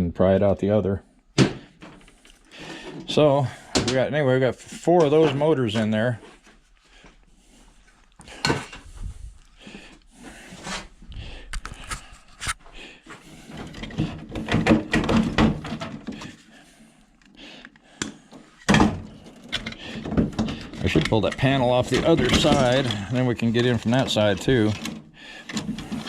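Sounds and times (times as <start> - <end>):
metal panels knocking and clattering: 13.5 - 16.4, 18.7 - 26.0.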